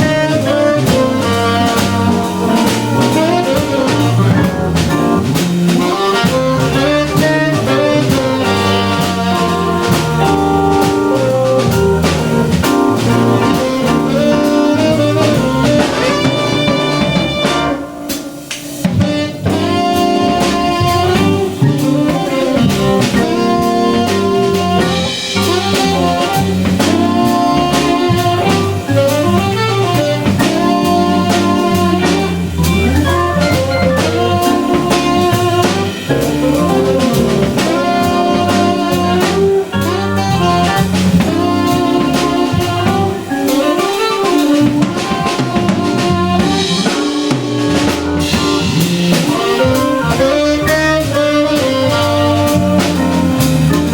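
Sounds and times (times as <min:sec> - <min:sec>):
drum kit beat: 0:00.0 - 0:53.9
guitar: 0:00.0 - 0:53.9
organ: 0:00.0 - 0:53.9
tenor saxophone: 0:00.0 - 0:53.9.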